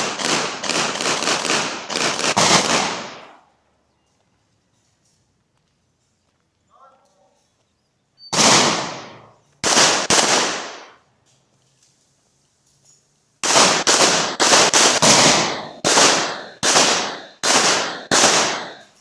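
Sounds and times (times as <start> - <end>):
gunshots with echoing tail: 0.0 - 3.4, 8.4 - 11.0, 13.4 - 19.0.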